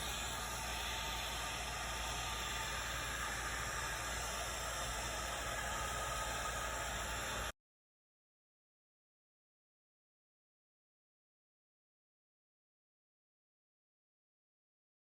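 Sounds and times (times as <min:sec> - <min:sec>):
heat gun hissing: 0:00.0 - 0:07.5.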